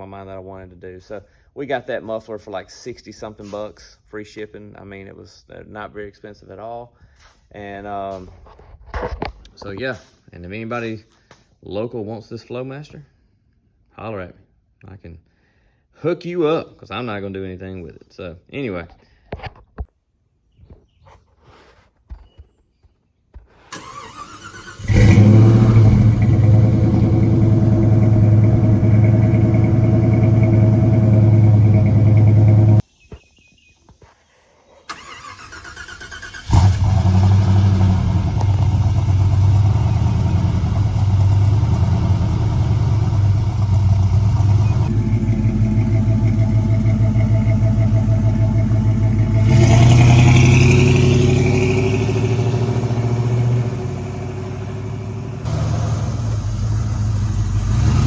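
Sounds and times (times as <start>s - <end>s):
car engine exhaust running: 24.9s - 32.8s, 36.8s - 58.0s.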